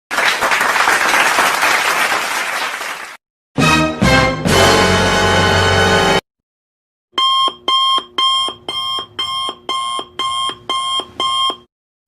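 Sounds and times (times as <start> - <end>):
music clip: 3.6 - 6.2
electronic alarm beeping: 7.2 - 11.7.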